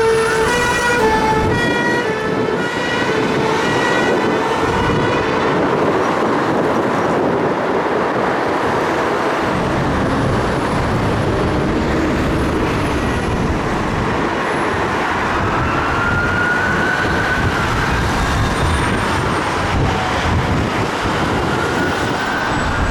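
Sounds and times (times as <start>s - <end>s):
heavy vehicle engines and tyres: 0.0s - 22.9s.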